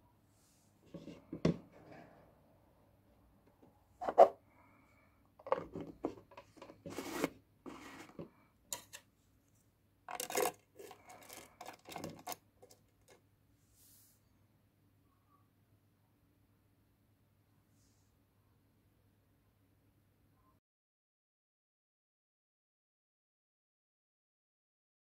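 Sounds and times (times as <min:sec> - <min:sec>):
objects scraping and rubbing: 0:00.8 - 0:02.2, 0:04.0 - 0:04.4, 0:05.4 - 0:09.0, 0:10.1 - 0:13.2.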